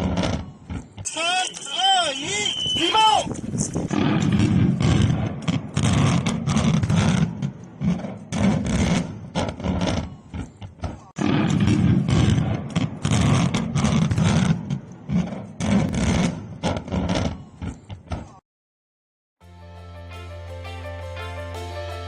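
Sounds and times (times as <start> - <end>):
distorted demolition blast booms: 3.3 - 7.4, 11.2 - 14.6.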